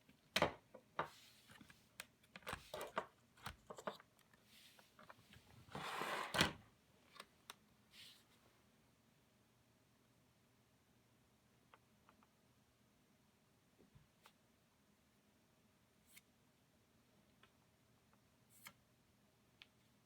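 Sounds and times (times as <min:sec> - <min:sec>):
clicks and knocks of handling parts: 0:00.3 - 0:04.4.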